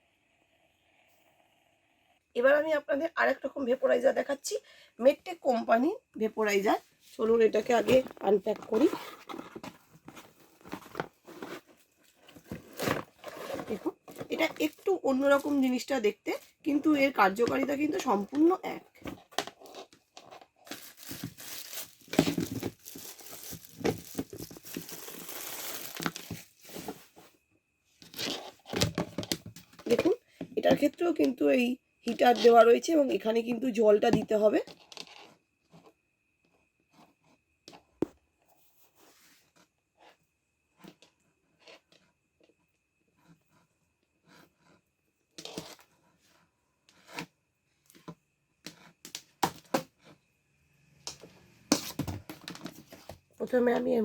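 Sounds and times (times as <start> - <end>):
packaging crinkling and rustling: 7.6 - 15.7, 20.6 - 27.2.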